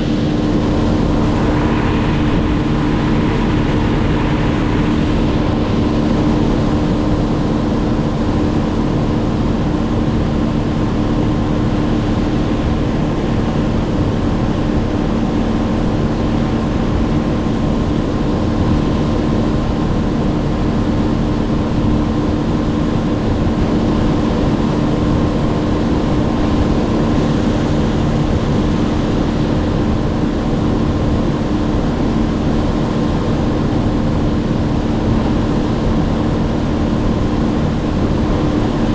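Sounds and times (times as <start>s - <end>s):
engine droning steadily: 0.0s - 38.9s.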